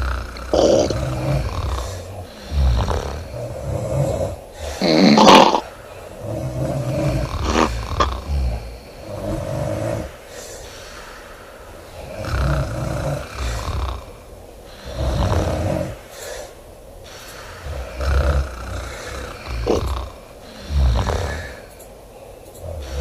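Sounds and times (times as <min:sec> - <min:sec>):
person snoring loudly: 0:00.0 - 0:10.2, 0:12.0 - 0:16.4, 0:17.5 - 0:21.7, 0:22.6 - 0:23.0
quiet breathing: 0:00.0 - 0:23.0.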